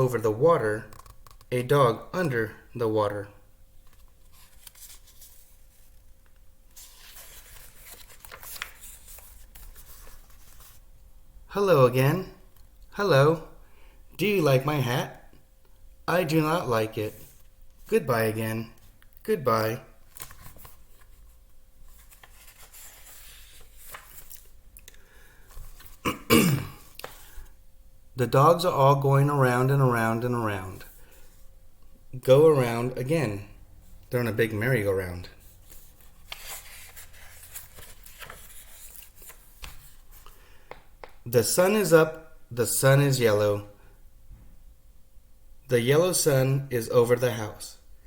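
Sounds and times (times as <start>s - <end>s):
low room hum: 0.0s - 48.0s
paper page turning: 3.8s - 10.8s, 20.0s - 24.6s, 26.8s - 27.5s, 35.4s - 41.2s.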